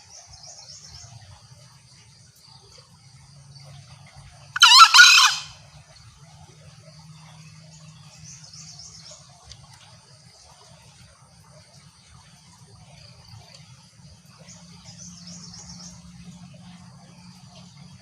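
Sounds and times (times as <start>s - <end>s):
low steady hum: 0.0s - 18.0s
insects trilling: 4.6s - 5.6s.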